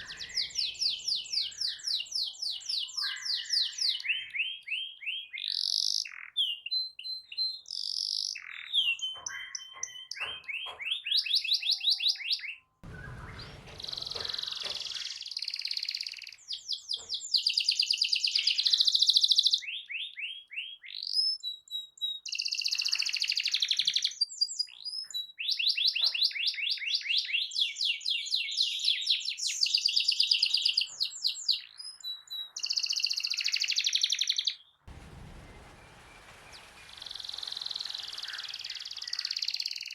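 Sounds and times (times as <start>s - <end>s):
canary singing trills: 0.0s - 21.4s
low rumble: 12.8s - 14.9s, 34.9s - 38.6s.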